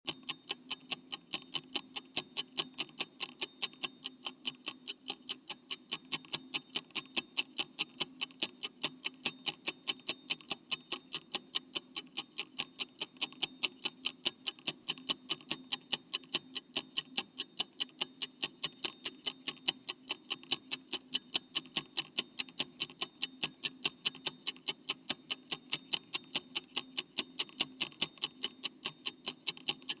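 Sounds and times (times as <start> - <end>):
clock ticking fast: 0.1 - 30.0.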